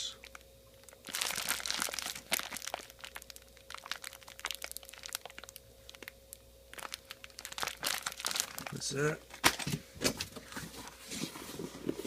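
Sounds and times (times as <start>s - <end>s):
faint steady hum: 0.0s - 12.0s
packing paper crinkling: 0.2s - 9.8s.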